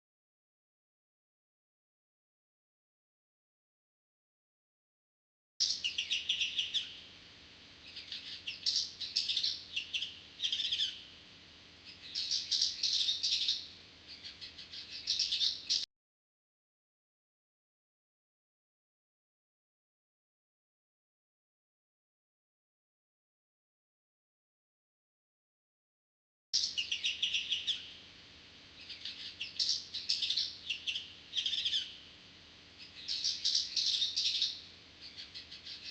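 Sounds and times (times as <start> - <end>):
sparrow chirping: 5.6 - 7.0, 7.9 - 11.1, 11.9 - 15.8, 26.6 - 28.0, 28.8 - 32.0, 32.8 - 35.9.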